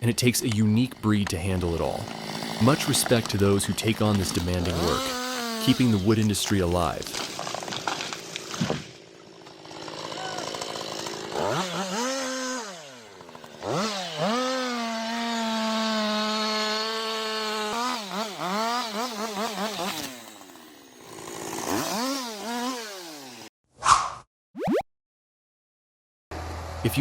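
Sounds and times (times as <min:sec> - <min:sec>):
chainsaw engine revving: 0:00.5 - 0:23.5, 0:26.4 - 0:27.0.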